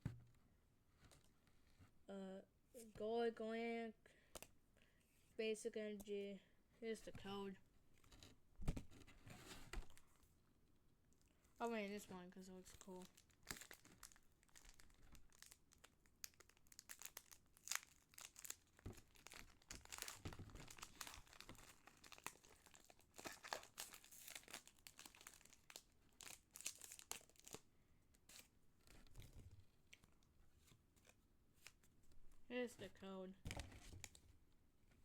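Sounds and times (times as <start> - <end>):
foil wrapper crinkling and tearing: 12.8 - 27.6.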